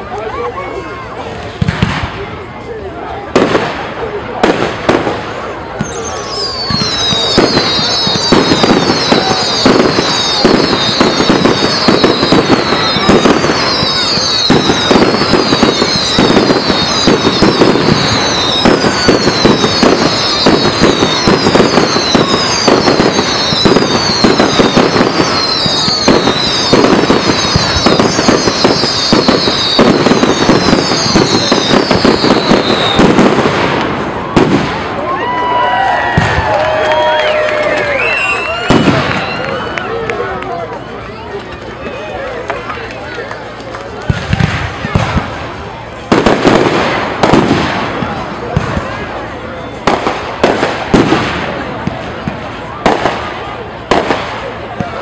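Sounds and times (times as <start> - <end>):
fireworks bangs and crackles: 0.0 - 55.0
high falling whistles: 5.8 - 33.1, 37.8 - 39.8.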